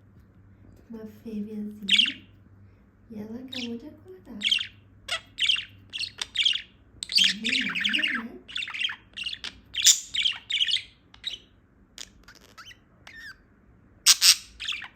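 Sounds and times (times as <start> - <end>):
budgerigar chirping and chattering: 1.9 - 2.3, 3.5 - 3.8, 4.4 - 13.4, 14.0 - 14.9.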